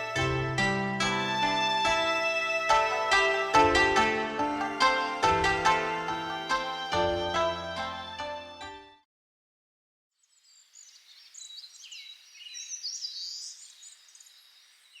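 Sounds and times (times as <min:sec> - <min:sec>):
background music: 0:00.0 - 0:09.0
faint outdoor hiss: 0:10.2 - 0:15.0
small birds chirping: 0:10.2 - 0:15.0.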